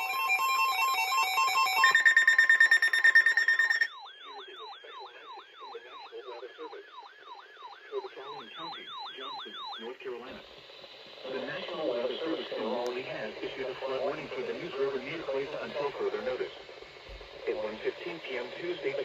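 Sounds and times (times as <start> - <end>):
downward sweeping alarm tone: 0.0 - 3.9
fluttering electronic alert tone: 1.4 - 3.9.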